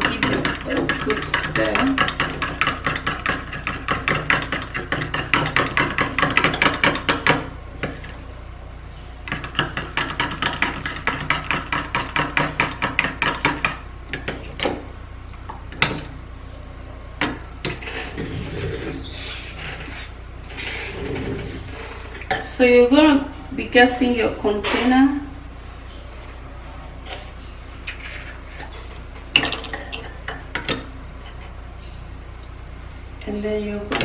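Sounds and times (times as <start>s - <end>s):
utensil tapping: 0.0s - 8.0s, 9.3s - 14.8s.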